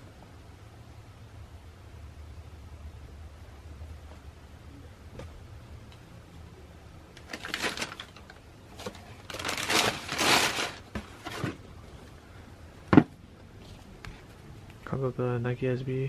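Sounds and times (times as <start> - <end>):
packaging rustling and crinkling: 7.2 - 11.7.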